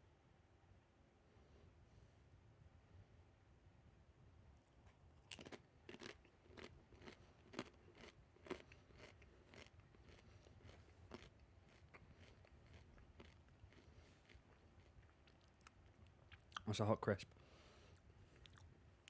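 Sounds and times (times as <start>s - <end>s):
person chewing crunchy chip: 4.8s - 16.7s, 17.9s - 18.7s.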